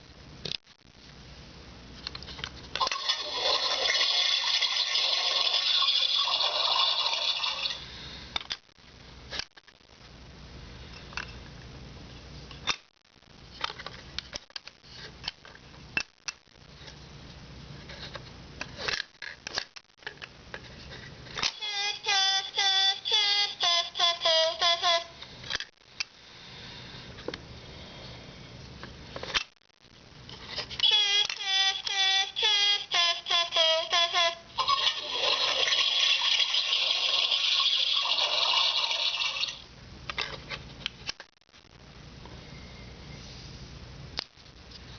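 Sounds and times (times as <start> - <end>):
electronic toilet flush effect: 2.8 - 7.8, 34.6 - 39.6
toy sound chip melody: 21.5 - 25.1, 30.8 - 35.5.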